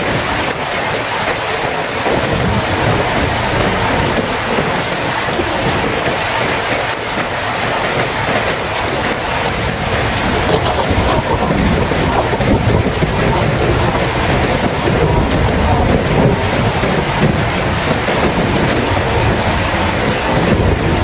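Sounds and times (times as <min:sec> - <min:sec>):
heavy rain falling: 0:00.0 - 0:21.0
deep low rumble: 0:09.9 - 0:17.9.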